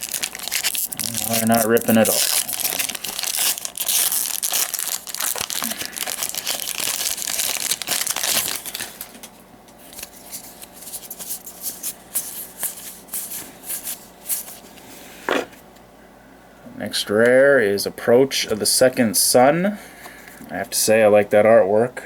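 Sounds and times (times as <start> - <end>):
foil wrapper crinkling: 0.0 - 14.6.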